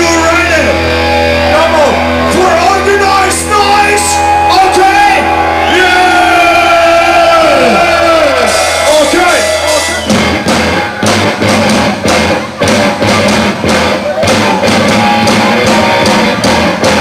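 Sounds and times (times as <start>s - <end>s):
singer shouting: 0.0s - 10.1s
heavy metal band playing live: 0.0s - 17.0s.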